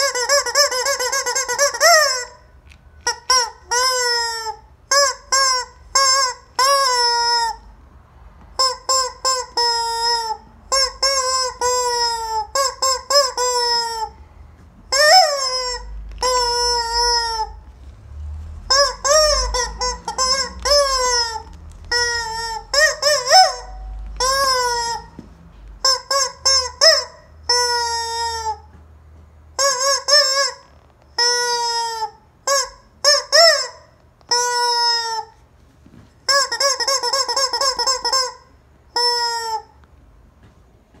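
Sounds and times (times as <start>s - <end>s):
rubber chicken toy squawking: 0.0s - 7.7s, 8.5s - 14.3s, 14.9s - 17.7s, 18.6s - 25.2s, 25.8s - 28.7s, 29.6s - 35.4s, 36.2s - 39.8s.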